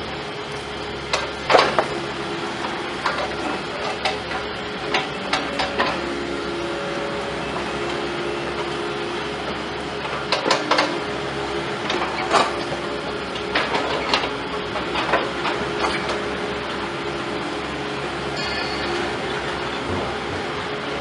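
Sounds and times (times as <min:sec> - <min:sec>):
excavator running: 0:00.0 - 0:21.0
metallic clanks and knocks: 0:03.0 - 0:06.1, 0:13.4 - 0:16.2, 0:18.4 - 0:20.8.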